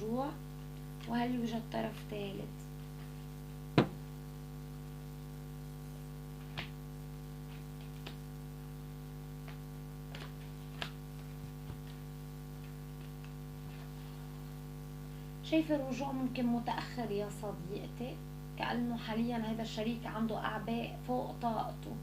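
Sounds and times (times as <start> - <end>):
steady electrical hum: 0.0 - 22.0
card tapping on table: 3.8 - 4.0.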